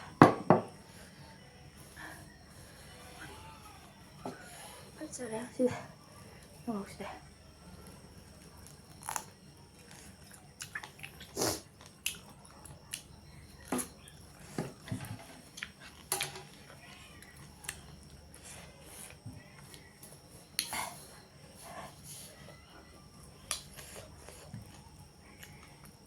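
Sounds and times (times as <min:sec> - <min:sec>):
chewing with mouth smacks: 0:08.6 - 0:14.2.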